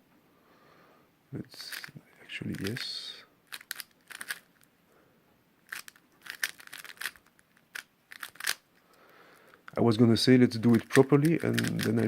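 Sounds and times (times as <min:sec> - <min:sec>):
plastic puzzle cube clicking: 0:01.6 - 0:01.9, 0:02.5 - 0:02.9, 0:03.5 - 0:04.7, 0:05.7 - 0:09.8, 0:10.6 - 0:12.0.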